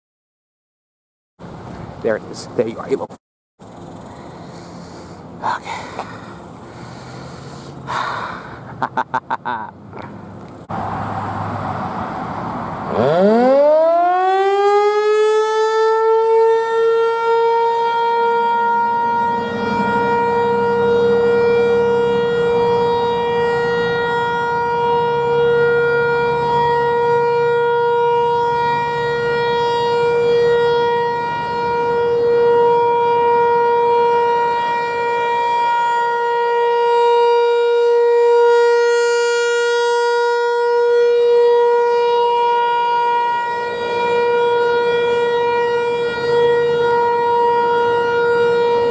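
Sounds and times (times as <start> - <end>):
warning siren steady tone: 12.0 - 48.9.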